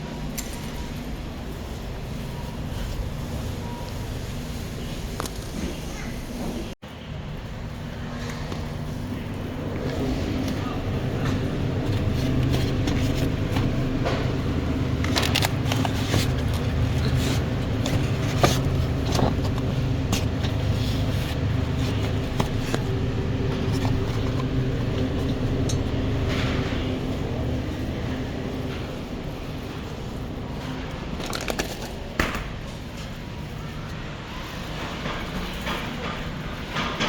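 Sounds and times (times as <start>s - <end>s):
cart wheels rumbling: 8.1s - 37.0s.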